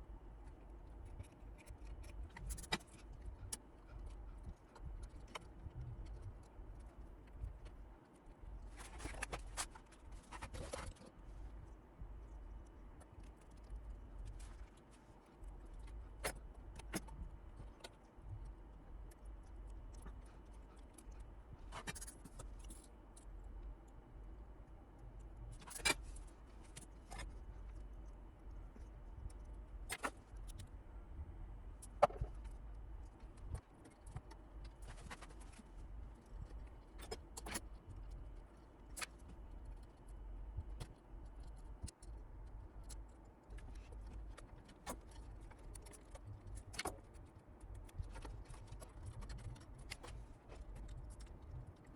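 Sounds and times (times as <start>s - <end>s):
steady low hum: 0.0s - 51.9s.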